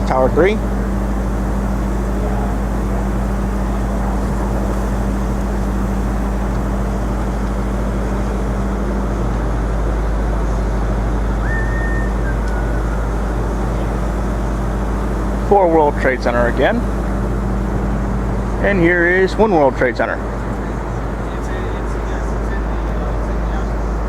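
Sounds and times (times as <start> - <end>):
machine hum: 0.0 - 24.0
traffic rumble: 0.0 - 24.0
brief high whine: 11.3 - 13.8.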